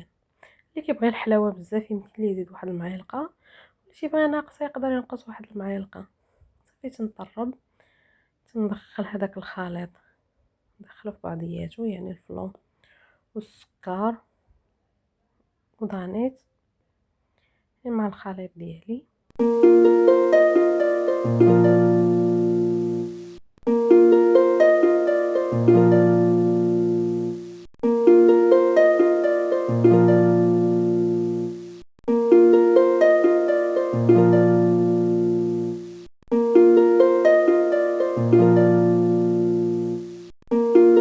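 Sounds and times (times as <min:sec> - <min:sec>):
plucked harp-like phrase: 0:19.4 - 0:41.0.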